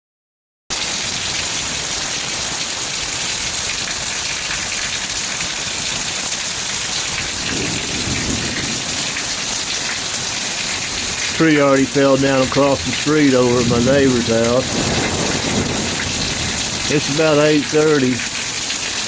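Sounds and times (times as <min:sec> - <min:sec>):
heavy rain pouring: 0:00.7 - 0:19.0
low rumble: 0:10.8 - 0:17.0.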